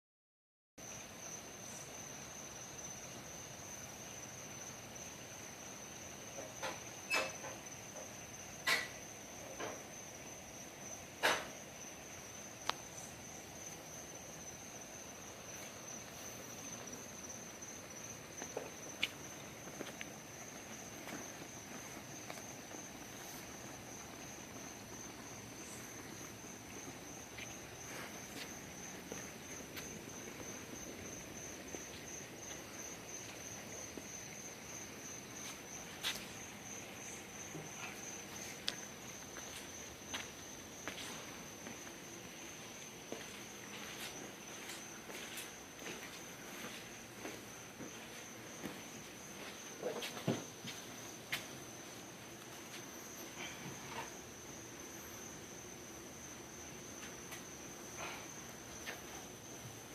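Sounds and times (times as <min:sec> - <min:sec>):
insects trilling: 0:00.8 - 0:59.9.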